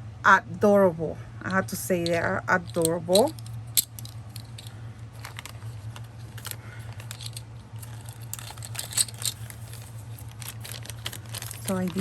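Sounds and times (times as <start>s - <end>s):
steady low hum: 0.0s - 12.0s
plastic packaging rustling: 2.7s - 12.0s.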